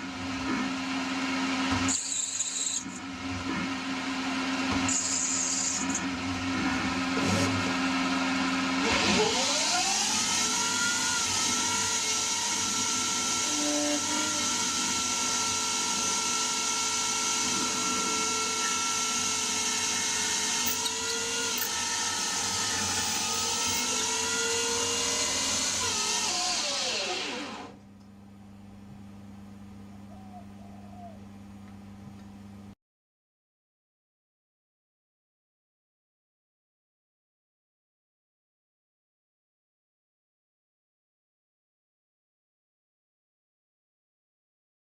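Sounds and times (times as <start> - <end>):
lathe spindle whine: 4.2 - 27.8
low machine hum: 27.5 - 32.8.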